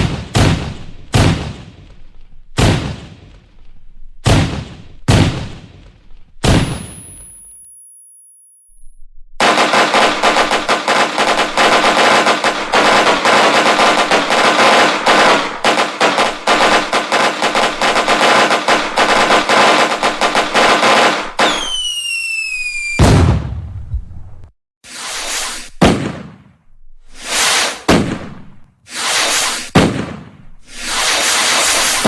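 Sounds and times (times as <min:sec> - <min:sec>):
falling whistle: 0:21.4 - 0:23.0
deep bang: 0:23.0 - 0:24.2
fireworks crackling pops: 0:27.2 - 0:32.0.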